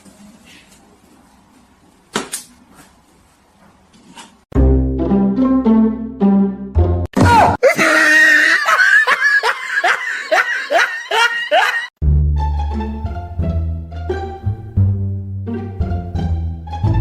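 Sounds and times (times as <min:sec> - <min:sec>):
plucked string background music: 0:04.5 - 0:07.1, 0:12.0 - 0:17.0
person laughing hard: 0:07.3 - 0:11.9.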